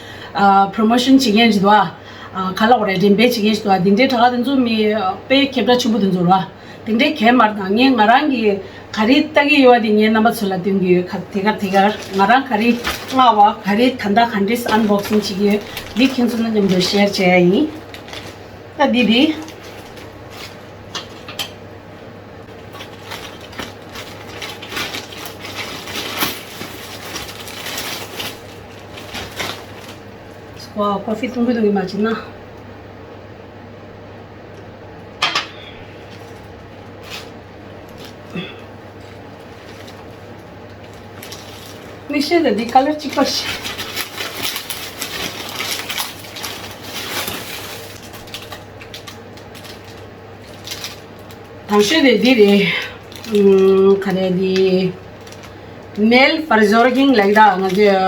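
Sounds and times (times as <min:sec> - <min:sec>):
packaging rustling and crinkling: 0:10.9 - 0:21.6, 0:22.4 - 0:30.6, 0:35.4 - 0:58.0.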